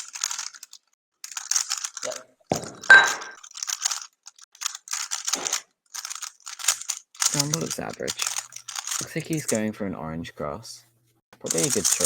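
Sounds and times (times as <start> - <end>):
plastic cube clicking: 0.0 - 2.2, 3.4 - 9.6.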